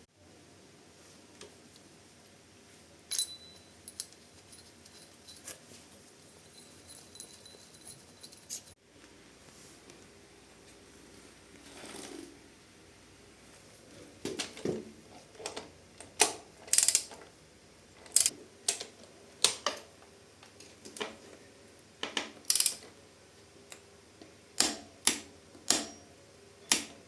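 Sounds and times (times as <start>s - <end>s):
metallic clinks of hand tools: 3.1s - 5.5s.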